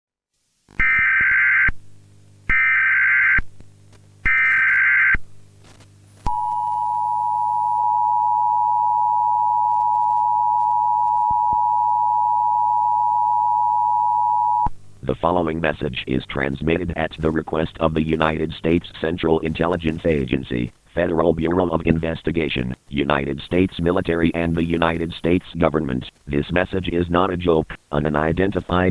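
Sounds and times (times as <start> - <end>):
steady two-tone attention signal: 6.3 - 14.7.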